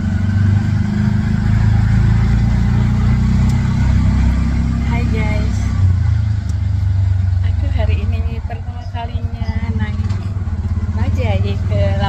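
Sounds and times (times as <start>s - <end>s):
auto-rickshaw engine rumbling: 0.0s - 12.0s.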